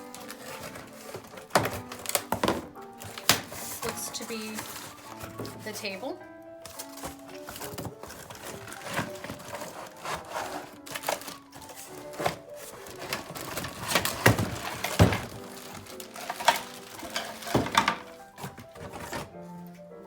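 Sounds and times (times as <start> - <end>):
plastic parts clattering: 0.0 - 19.4
packaging rustling: 0.0 - 19.7
background music: 0.0 - 20.0.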